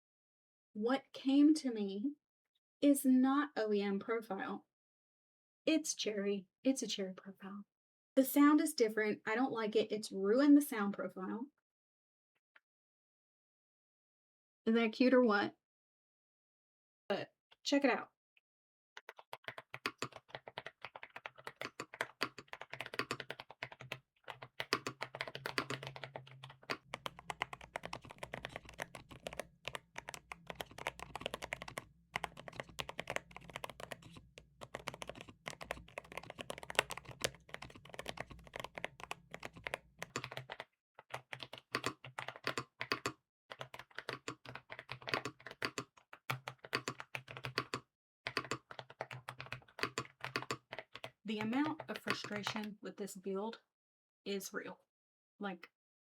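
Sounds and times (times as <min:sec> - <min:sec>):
mechanical keyboard key clacks: 0:19.0 - 0:52.7.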